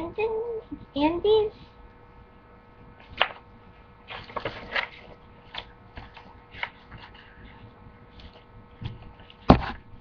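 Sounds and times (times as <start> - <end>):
paper rustling: 4.1 - 9.5.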